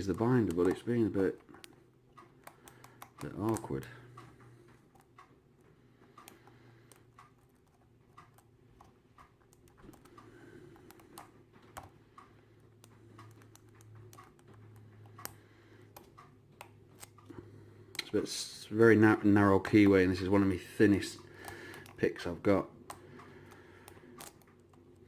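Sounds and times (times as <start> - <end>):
lock pick clicking and scratching: 12.8 - 17.3, 22.8 - 25.0.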